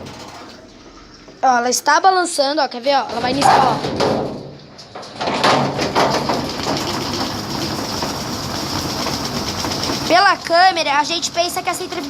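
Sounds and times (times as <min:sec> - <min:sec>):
knocks in washing machine: 0:00.0 - 0:00.6, 0:03.1 - 0:04.6, 0:05.2 - 0:10.2
drum spinning with steady hum: 0:00.0 - 0:01.4, 0:05.1 - 0:12.0
washing machine motor: 0:00.0 - 0:01.8, 0:05.2 - 0:12.0.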